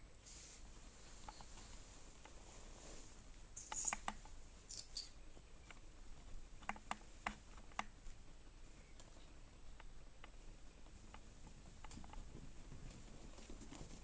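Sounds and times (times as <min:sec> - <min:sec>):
kitten paws tapping on floor: 0:09.8 - 0:14.0.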